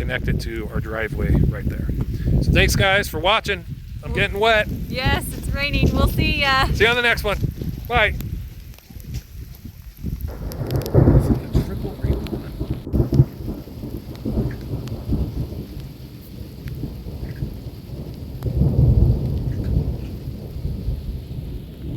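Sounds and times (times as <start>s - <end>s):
rain falling: 0.0s - 21.9s
low rumble: 10.1s - 17.2s.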